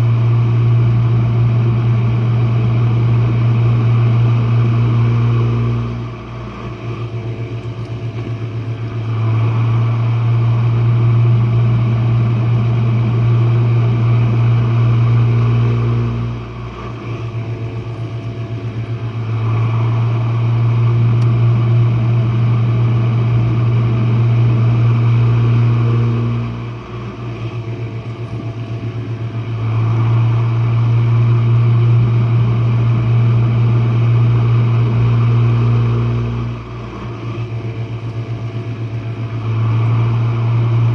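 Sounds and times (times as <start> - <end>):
dishwasher humming and hissing: 0.0 - 40.9.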